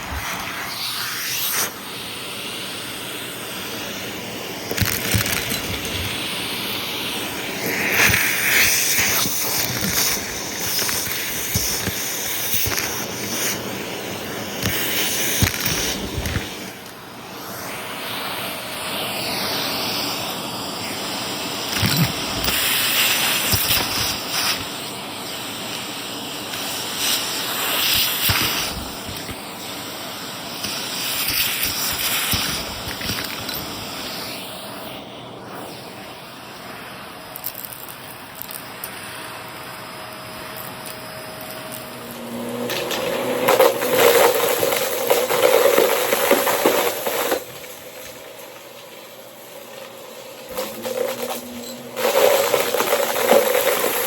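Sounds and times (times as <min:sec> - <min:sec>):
vacuum cleaner running: 0:00.0 - 0:54.0
debris rattling up vacuum: 0:04.5 - 0:17.0, 0:21.7 - 0:24.8, 0:26.5 - 0:29.7, 0:30.6 - 0:34.1, 0:41.4 - 0:54.0.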